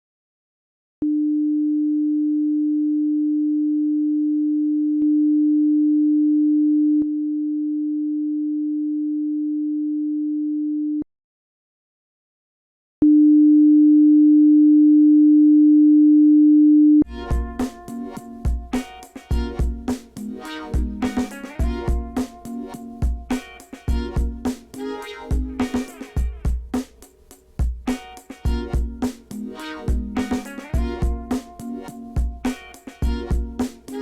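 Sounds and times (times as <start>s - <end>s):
sine test tone: 13.0s - 17.1s.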